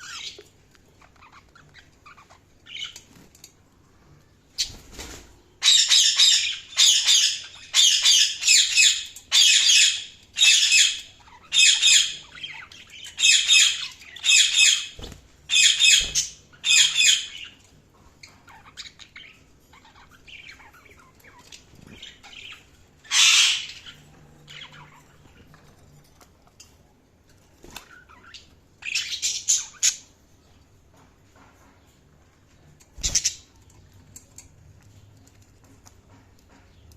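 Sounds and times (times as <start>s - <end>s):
budgerigar loud calls: 23.1s - 23.8s.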